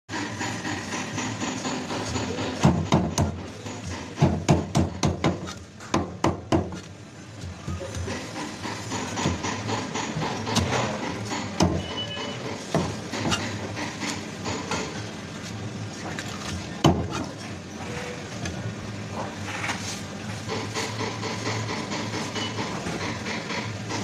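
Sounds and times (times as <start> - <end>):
busy market din: 0.1 - 24.0
knife chopping on wooden block: 1.7 - 11.9.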